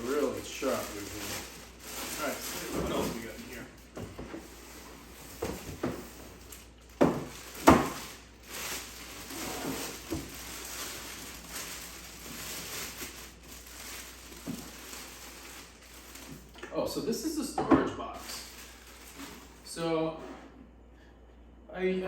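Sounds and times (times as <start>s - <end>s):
packaging knocks and rustles: 0.0s - 4.5s, 5.2s - 16.6s, 18.2s - 19.6s.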